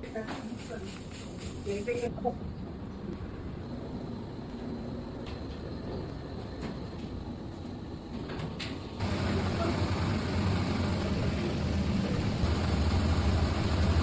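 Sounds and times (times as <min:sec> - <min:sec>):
machinery rumbling: 0:07.9 - 0:14.0.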